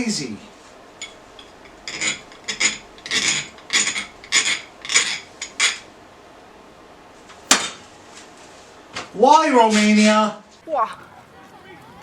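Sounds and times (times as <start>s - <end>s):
hand file rasping on steel: 1.3s - 5.9s.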